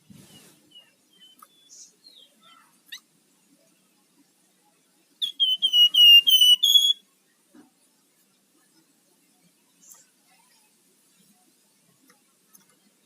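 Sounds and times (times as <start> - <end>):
bird chirps: 0.2 - 3.1, 5.2 - 7.0
bird whistled notes: 5.2 - 7.0.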